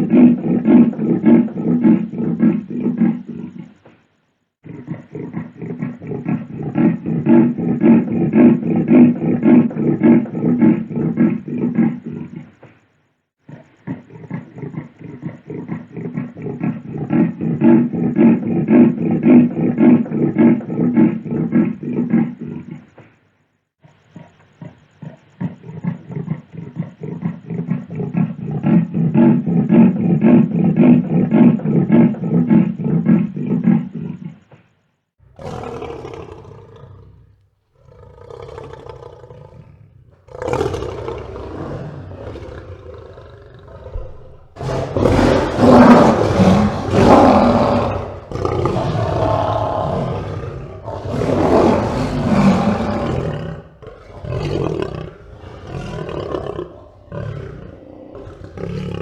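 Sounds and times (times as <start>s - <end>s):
big cat growling: 4.6s - 12.8s, 13.5s - 23.2s, 35.2s - 59.0s
big cat roaring: 35.2s - 59.0s.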